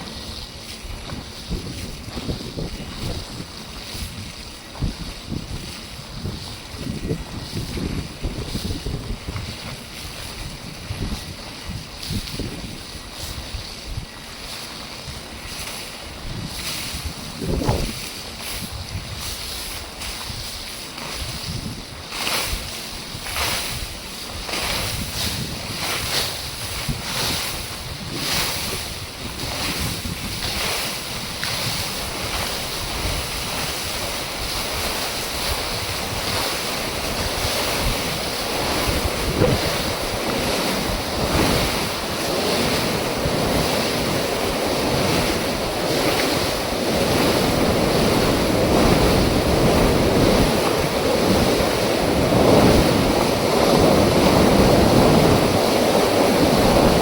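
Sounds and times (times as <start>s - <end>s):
water rushing through dam gate: 20.8s - 57.0s.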